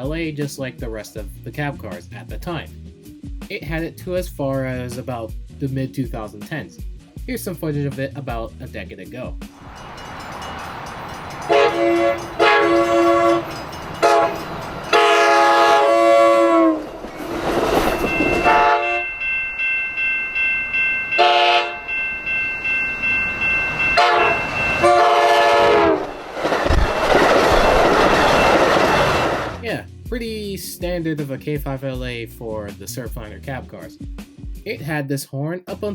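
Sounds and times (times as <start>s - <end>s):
train running by: 9.5s - 29.6s
train horn blasts: 9.6s - 17.0s, 18.0s - 19.2s, 21.1s - 22.0s, 23.9s - 26.2s
rail clatter: 9.6s - 29.6s.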